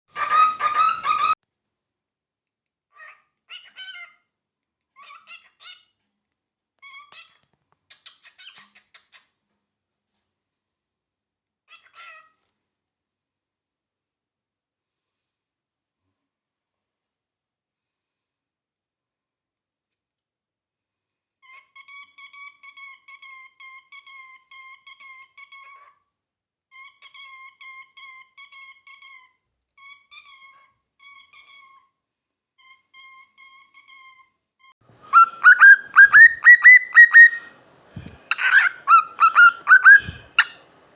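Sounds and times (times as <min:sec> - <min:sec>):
cockatiel chattering and chirping: 0:00.1 - 0:01.4, 0:06.8 - 0:09.3, 0:21.4 - 0:25.9, 0:26.7 - 0:31.8, 0:35.1 - 0:40.6.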